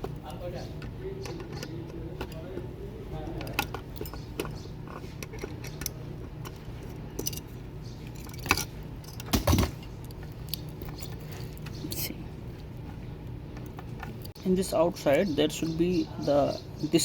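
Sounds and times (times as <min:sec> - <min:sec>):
steady low hum: 0:00.0 - 0:17.0
small metal parts clinking: 0:03.3 - 0:09.7.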